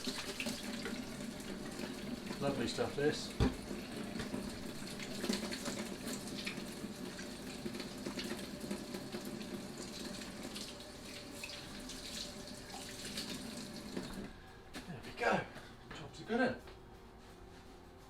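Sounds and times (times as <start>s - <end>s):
tap water running: 0.0s - 14.4s.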